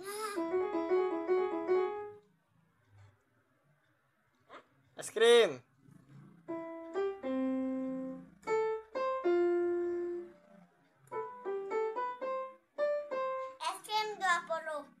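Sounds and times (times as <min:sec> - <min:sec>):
electronic keyboard piano tune: 0:00.0 - 0:02.2, 0:06.4 - 0:13.7.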